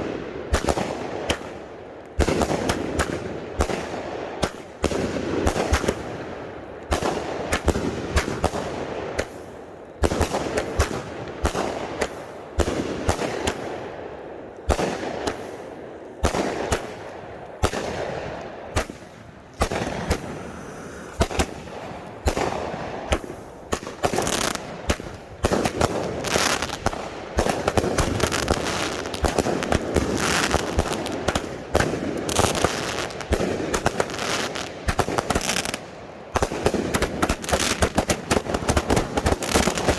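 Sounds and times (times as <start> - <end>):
fireworks banging: 16.2 - 39.9.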